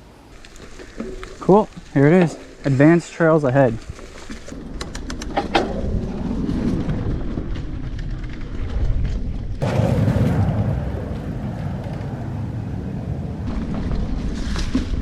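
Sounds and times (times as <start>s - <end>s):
bike tyre rumble: 0.2s - 15.0s
wind buffeting microphone: 3.7s - 15.0s.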